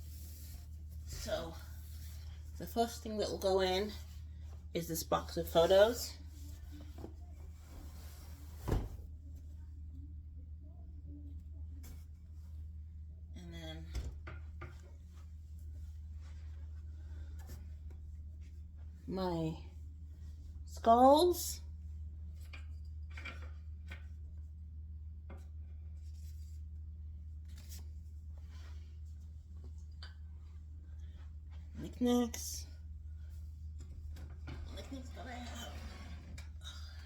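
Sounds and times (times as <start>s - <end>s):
low steady hum: 0.0s - 37.0s.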